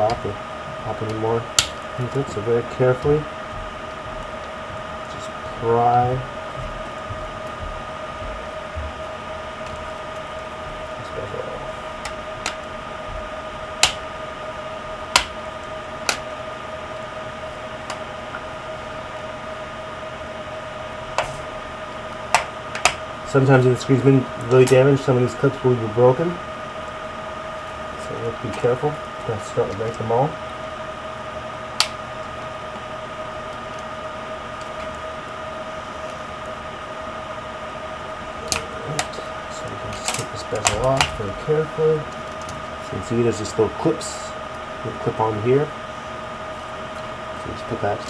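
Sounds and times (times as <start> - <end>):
faint two-tone whine: 0.0 - 48.0
steady hum: 0.0 - 48.0
plastic clips snapping: 13.8 - 14.0.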